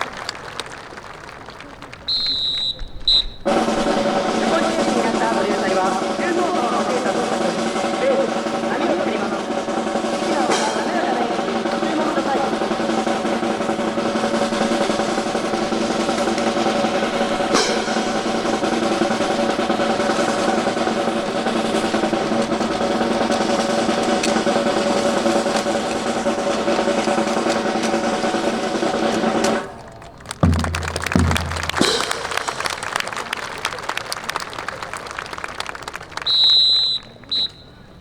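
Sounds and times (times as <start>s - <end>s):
snare drum roll: 3.4s - 29.8s, 30.4s - 33.1s
low drum hit: 30.4s - 32.7s.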